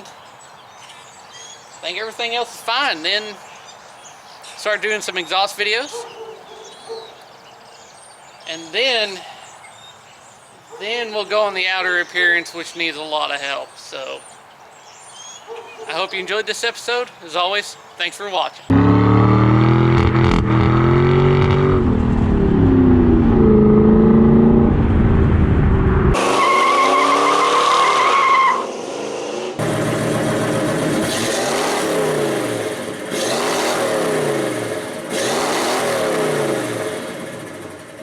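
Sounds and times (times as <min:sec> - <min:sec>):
high whine: 0:18.7 - 0:26.5
engine revving: 0:18.7 - 0:38.0.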